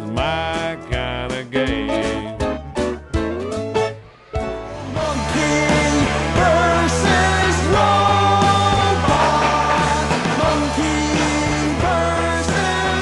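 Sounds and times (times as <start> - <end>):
person singing: 0.0 - 2.4, 4.8 - 13.0
bass guitar: 0.0 - 13.0
drums: 0.0 - 13.0.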